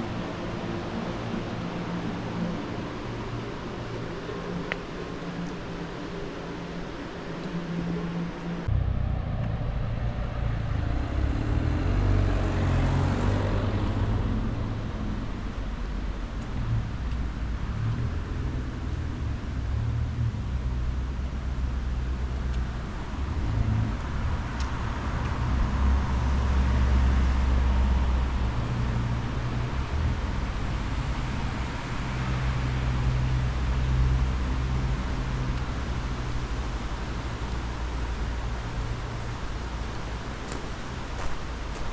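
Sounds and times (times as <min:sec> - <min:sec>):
cars passing: 0:00.0 - 0:41.9
steady low rumble: 0:00.0 - 0:41.9.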